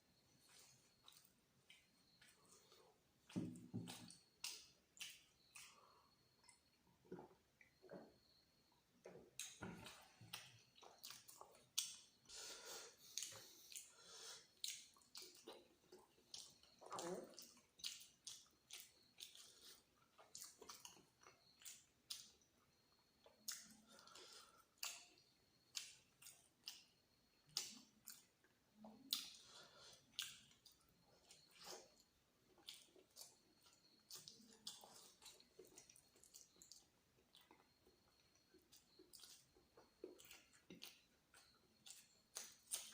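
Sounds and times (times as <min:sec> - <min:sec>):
chewing soft food: 0:00.0 - 0:42.9
wet lip smacks and mouth clicks: 0:03.9 - 0:05.8, 0:16.3 - 0:19.5, 0:32.7 - 0:42.9.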